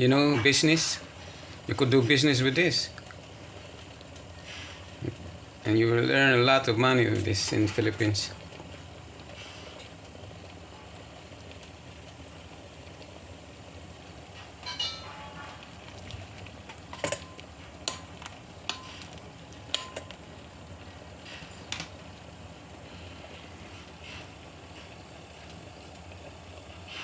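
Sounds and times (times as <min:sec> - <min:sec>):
low steady hum: 0:00.0 - 0:27.0
utensil clinking against pot: 0:14.6 - 0:15.6, 0:16.8 - 0:20.2.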